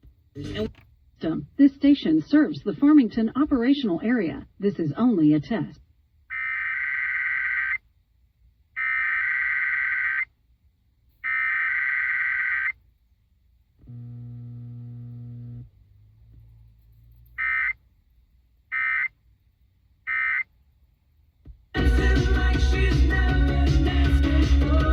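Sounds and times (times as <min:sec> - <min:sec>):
short data bursts: 0:06.3 - 0:07.8, 0:08.8 - 0:10.3, 0:11.2 - 0:12.8, 0:17.3 - 0:17.8, 0:18.7 - 0:19.2, 0:20.1 - 0:20.5
warbling data tone bursts: 0:06.3 - 0:07.8, 0:08.8 - 0:10.3, 0:11.2 - 0:12.8, 0:17.4 - 0:17.8, 0:18.7 - 0:19.1, 0:20.1 - 0:20.4
low buzzing tone: 0:13.8 - 0:17.7.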